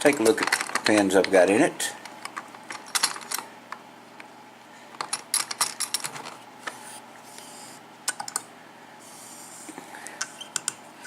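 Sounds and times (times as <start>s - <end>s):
metallic clicks and clatters: 0.0s - 1.4s.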